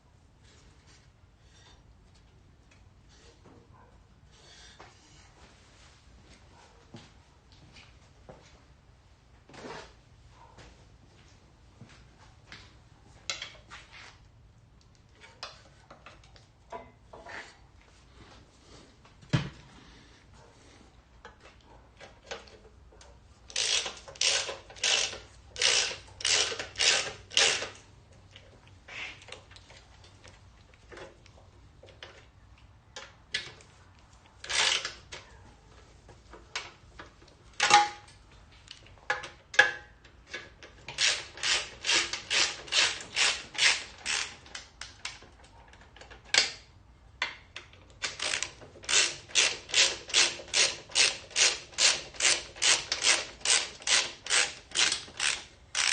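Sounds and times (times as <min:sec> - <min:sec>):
ratchet wrench clicking: 0:23.5 - 0:27.8, 0:34.4 - 0:35.0, 0:40.9 - 0:45.1, 0:48.0 - 0:55.9.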